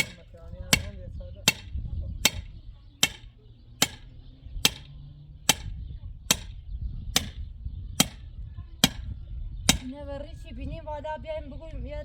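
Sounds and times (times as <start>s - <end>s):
sharp striking blows: 0.0s - 9.1s.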